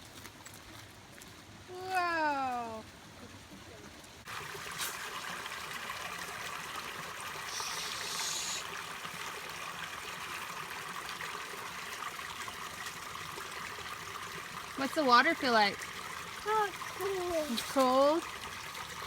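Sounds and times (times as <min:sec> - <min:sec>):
creek water trickling over rocks: 0:00.0 - 0:19.0.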